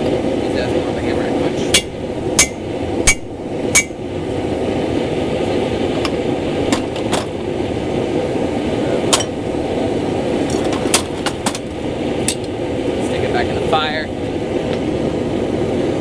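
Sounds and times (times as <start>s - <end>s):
hammer ringing on metal: 1.7s - 4.0s.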